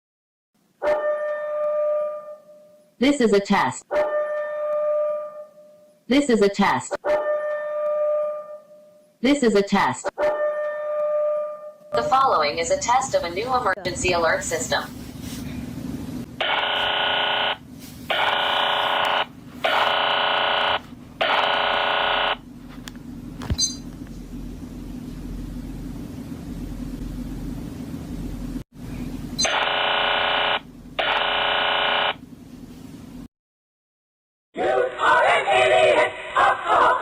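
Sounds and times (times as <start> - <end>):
steady low hum: 12.0 - 33.3
harsh electronic alert buzzer: 16.4 - 22.4, 29.4 - 32.2.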